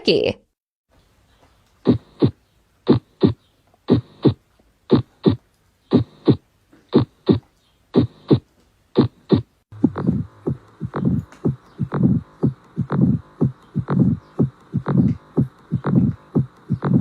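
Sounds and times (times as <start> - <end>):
heartbeat thuds: 1.8 - 6.4, 7.0 - 17.0
faint hum: 9.0 - 17.0.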